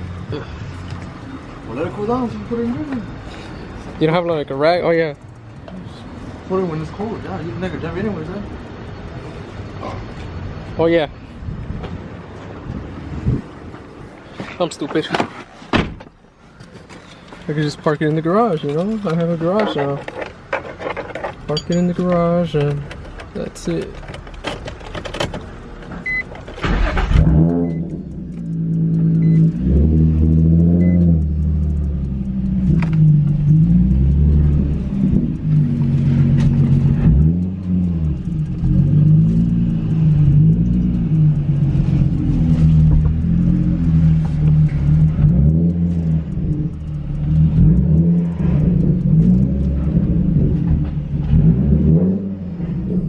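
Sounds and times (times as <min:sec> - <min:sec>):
loud car engine revving: 0:26.1 - 0:53.0.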